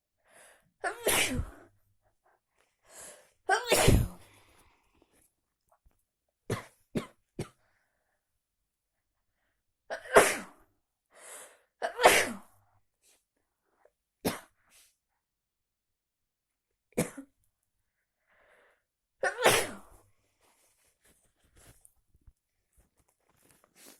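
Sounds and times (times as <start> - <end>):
person sneezing: 0.8 - 1.6, 3.5 - 4.3, 11.8 - 12.5, 19.2 - 20.0.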